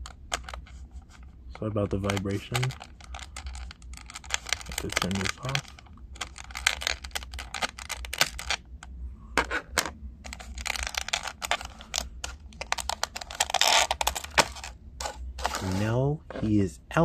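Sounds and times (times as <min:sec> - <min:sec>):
plastic packaging crackling: 0:02.1 - 0:08.6, 0:10.3 - 0:16.0.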